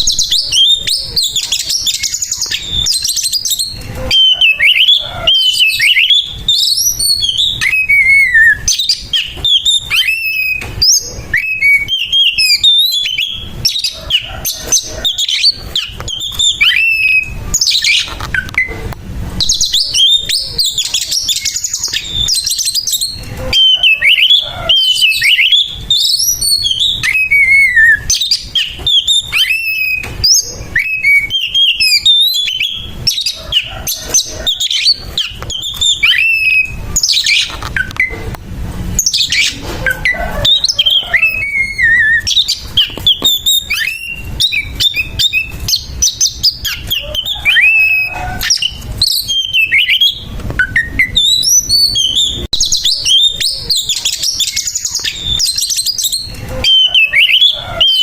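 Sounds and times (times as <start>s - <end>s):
songbird singing whistled phrases: 0.0s - 18.8s, 19.4s - 38.2s, 39.0s - 58.0s.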